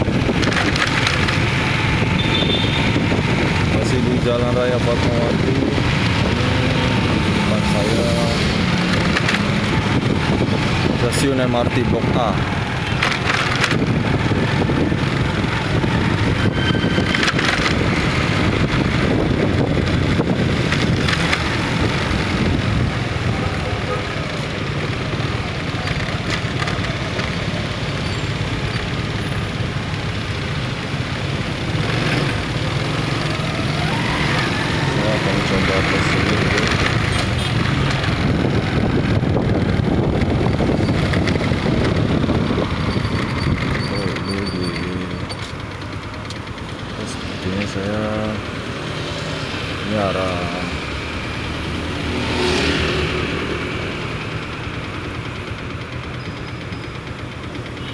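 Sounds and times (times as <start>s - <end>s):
road traffic on wet street: 0.0s - 57.9s
wind buffeting microphone: 2.8s - 4.2s, 8.5s - 23.8s, 35.8s - 44.3s.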